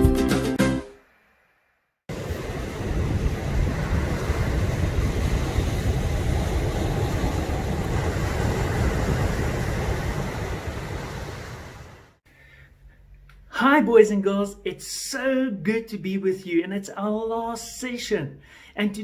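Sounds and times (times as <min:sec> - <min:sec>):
heavy low rumble: 0:02.1 - 0:12.0
rushing wind-like noise: 0:02.1 - 0:12.2.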